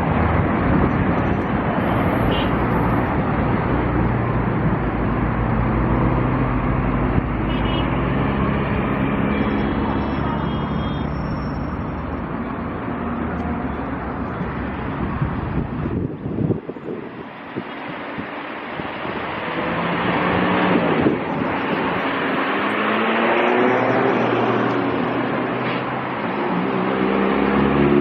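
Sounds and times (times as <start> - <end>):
wind buffeting microphone: 14.3 - 22.2.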